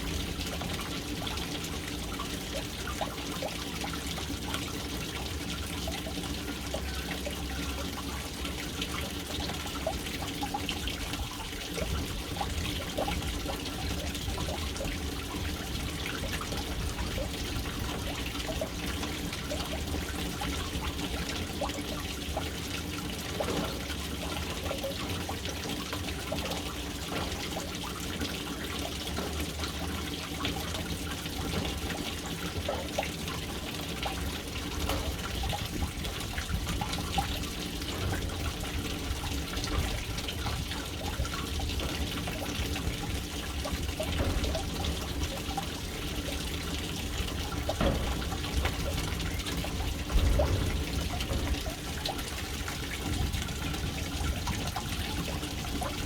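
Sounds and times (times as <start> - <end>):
water trickling into a tank: 0.0 - 56.0.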